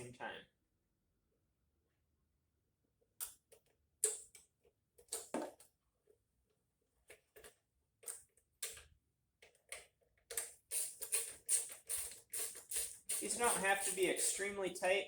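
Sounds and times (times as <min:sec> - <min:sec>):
metallic clicks of ratchet and bolts: 0:09.6 - 0:14.4.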